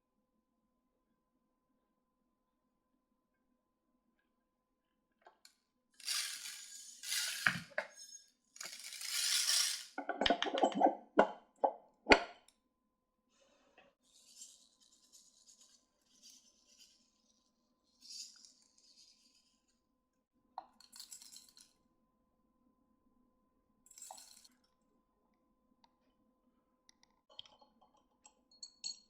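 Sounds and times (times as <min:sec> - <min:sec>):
small hard objects clicking: 0:06.0 - 0:07.8.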